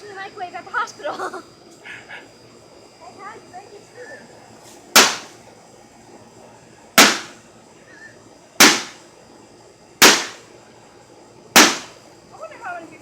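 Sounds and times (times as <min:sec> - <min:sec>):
blows striking metal casing: 0:05.0 - 0:05.4, 0:07.0 - 0:07.4, 0:08.6 - 0:09.0, 0:10.0 - 0:10.5, 0:11.6 - 0:12.0.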